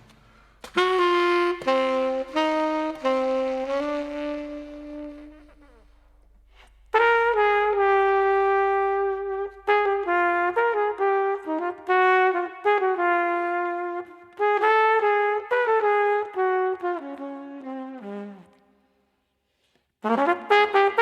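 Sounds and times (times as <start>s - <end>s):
solo saxophone melody: 0.0s - 18.8s, 20.0s - 21.0s.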